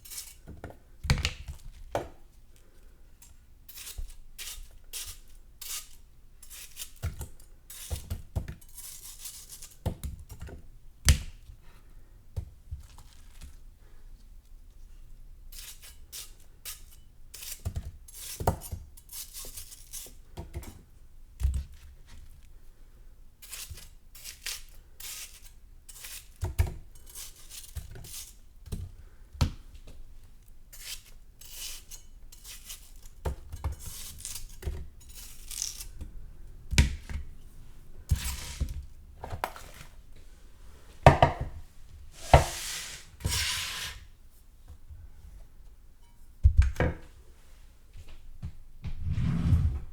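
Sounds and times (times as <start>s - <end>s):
knife cutting watermelon: 30.7s - 37.4s, 38.1s - 40.0s, 42.2s - 44.1s
knife knocking on board: 41.1s - 41.6s.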